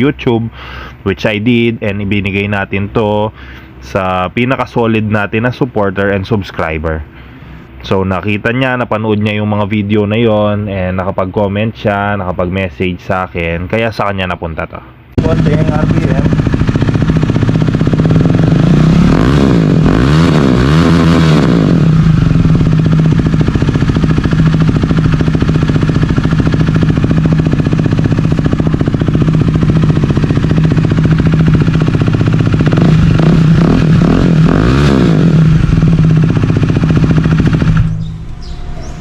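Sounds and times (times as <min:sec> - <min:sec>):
motorcycle engine idling: 0:15.2 - 0:39.0.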